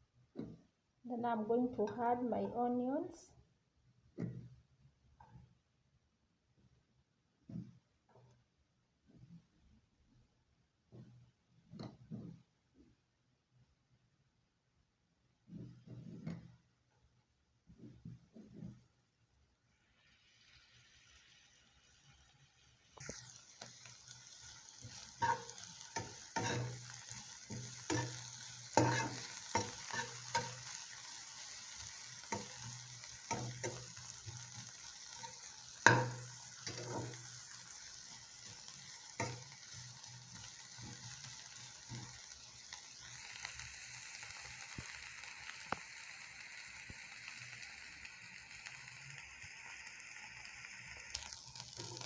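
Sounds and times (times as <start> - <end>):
onions sizzling in oil: 0.4 - 3.3, 19.7 - 52.0
utensil scraping a pan: 23.6 - 42.5.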